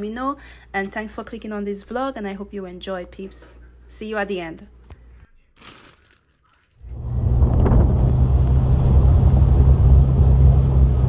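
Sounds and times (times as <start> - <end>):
car interior road and engine rumble: 6.9 - 11.0.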